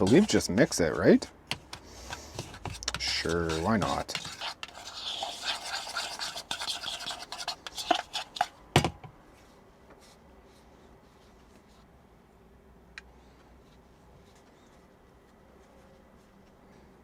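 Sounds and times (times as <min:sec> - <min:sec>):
gritty scraping in a bowl: 0:00.0 - 0:08.6.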